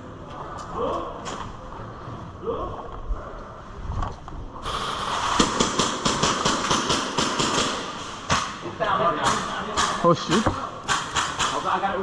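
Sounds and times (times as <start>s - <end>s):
hiss: 4.6s - 5.8s
airsoft guns firing rapidly: 4.9s - 8.5s, 9.2s - 12.0s.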